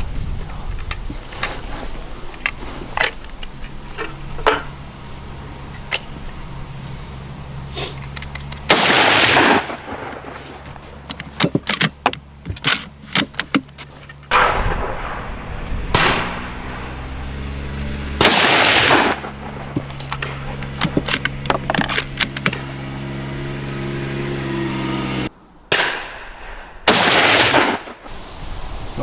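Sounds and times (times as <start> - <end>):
rifle shots with echo: 8.7 - 10.3, 14.3 - 15.3, 15.9 - 16.5, 18.2 - 19.5, 25.7 - 28.1.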